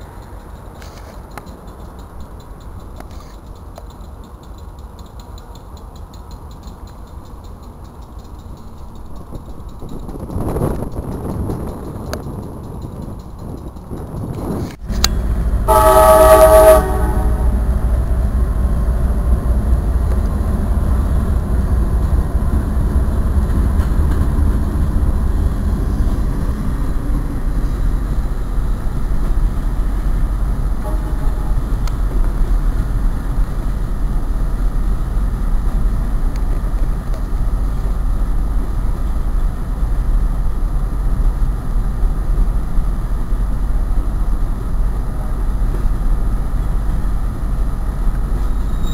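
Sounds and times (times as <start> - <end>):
train passing rumble: 0.0 - 48.9
train horn blast: 15.6 - 17.8, 30.8 - 31.8.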